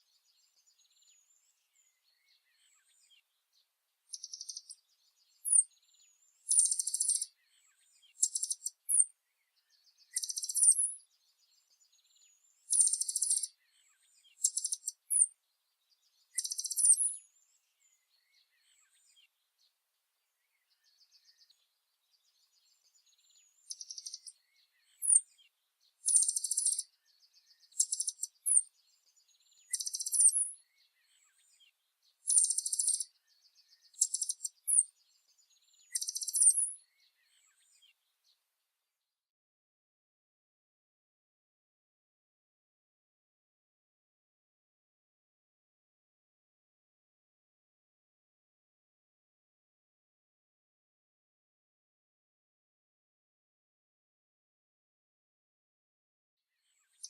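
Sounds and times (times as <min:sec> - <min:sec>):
faint bird chirps: 0:00.0 - 0:38.5, 0:56.5 - 0:57.0
songbird buzzy trills: 0:06.5 - 0:07.3, 0:08.2 - 0:09.1, 0:10.2 - 0:11.0, 0:12.7 - 0:13.5, 0:14.4 - 0:15.3, 0:16.4 - 0:17.2, 0:26.1 - 0:26.9, 0:27.6 - 0:28.7, 0:29.6 - 0:30.6, 0:32.3 - 0:33.1, 0:35.9 - 0:36.8.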